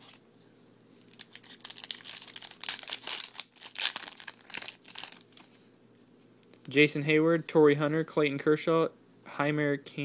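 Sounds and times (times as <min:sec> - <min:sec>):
plastic wrapper tearing and crinkling: 0:00.0 - 0:00.2, 0:01.0 - 0:05.5.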